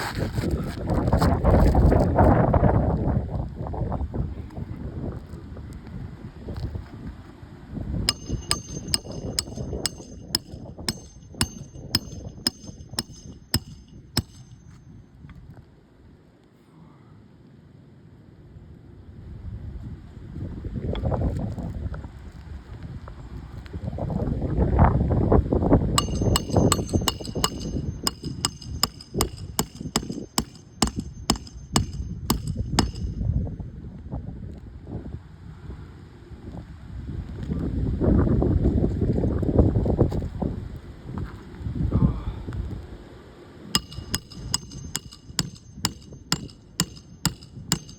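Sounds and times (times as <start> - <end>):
wind rumble on microphone: 0.0 - 16.2, 18.3 - 43.4
hammer striking nail: 8.1 - 14.8, 26.0 - 33.3, 43.8 - 47.9.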